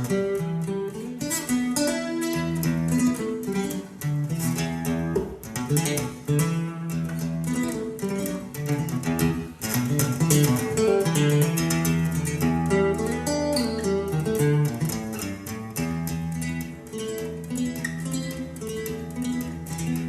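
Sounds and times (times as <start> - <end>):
strummed acoustic guitar chords: 0.0 - 20.0.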